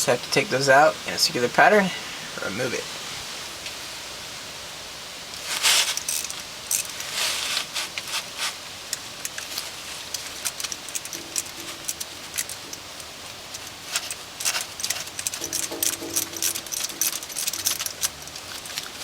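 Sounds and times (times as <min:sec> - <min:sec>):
steady hiss: 0:00.0 - 0:19.0
wrench clicking on metal bolts: 0:05.9 - 0:07.1, 0:08.9 - 0:19.0.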